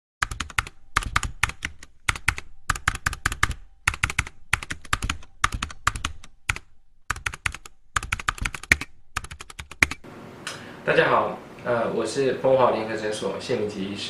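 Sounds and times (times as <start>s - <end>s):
computer keyboard typing: 0.2s - 10.0s.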